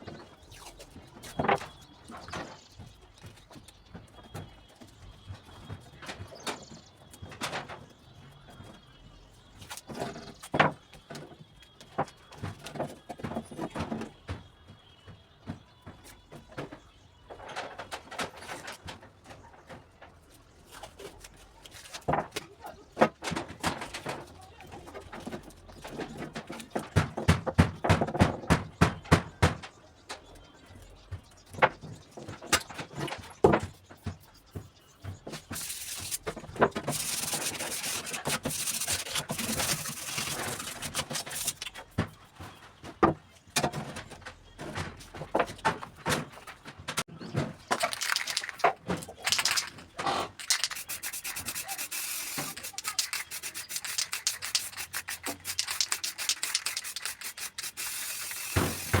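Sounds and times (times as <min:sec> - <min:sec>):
taps and knocks: 0:25.2 - 0:29.8.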